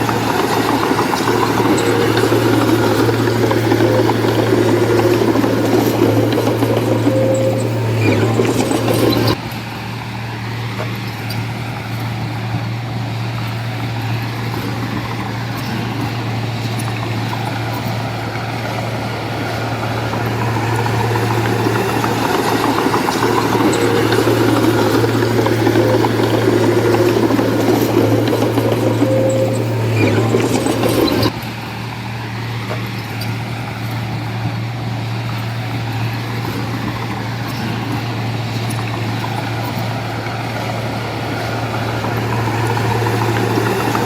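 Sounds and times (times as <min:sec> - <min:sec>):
heavy diesel engine running: 0:00.0 - 0:44.0.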